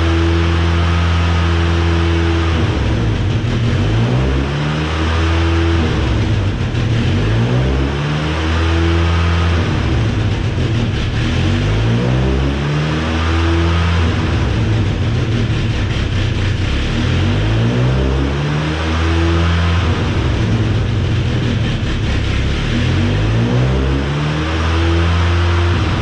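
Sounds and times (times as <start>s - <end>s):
pickup engine revving: 0.0s - 26.0s.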